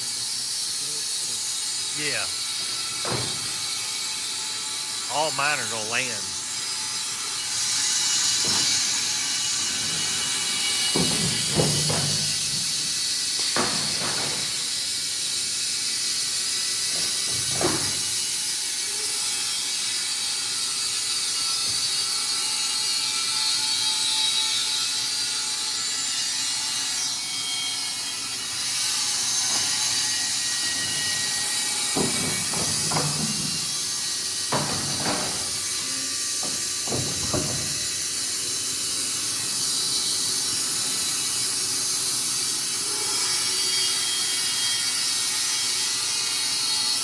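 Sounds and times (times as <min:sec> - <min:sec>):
band sawmill hissing: 0:00.0 - 0:20.9, 0:26.9 - 0:44.9.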